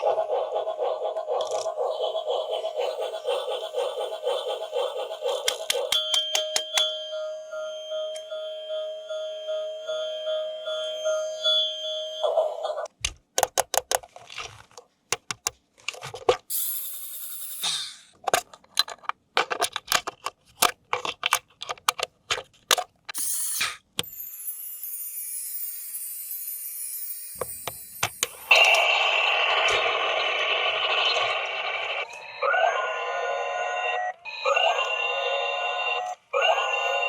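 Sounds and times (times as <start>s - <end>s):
toy clicking and rattling: 18.8s - 28.8s.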